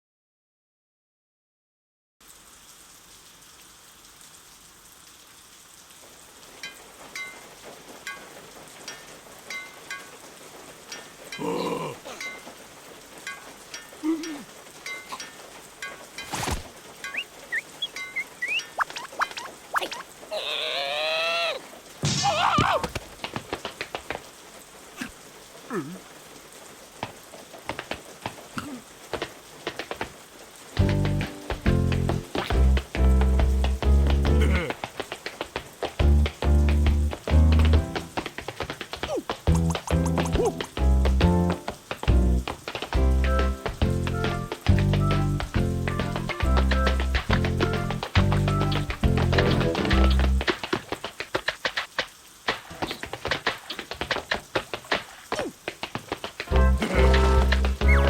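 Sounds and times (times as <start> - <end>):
rain falling steadily: 2.2 - 58.0
water drops plinking: 6.6 - 10.2, 10.9 - 12.6, 13.2 - 20.1, 39.5 - 41.5
short low vocal cry: 11.4 - 12.2
squealing cartoon character voice: 19.8 - 21.6.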